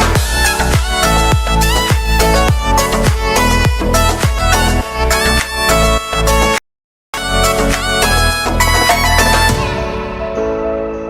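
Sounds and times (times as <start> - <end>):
kick drum: 0.0 - 4.6
electronic dance music: 0.0 - 6.6, 7.2 - 10.2.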